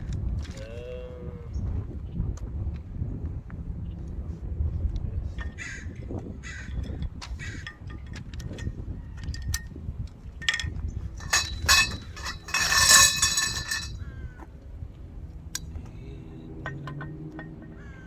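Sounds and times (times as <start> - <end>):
wind rumble on microphone: 0.0 - 18.0
metal tubes clinking and knocking: 7.4 - 9.6, 10.4 - 14.0
harsh metal clatter: 10.5 - 14.0.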